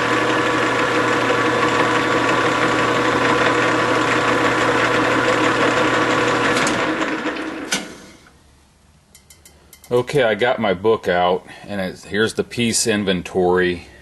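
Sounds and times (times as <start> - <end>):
metal lathe running: 0.0 - 8.1
lathe winding down: 0.0 - 8.3.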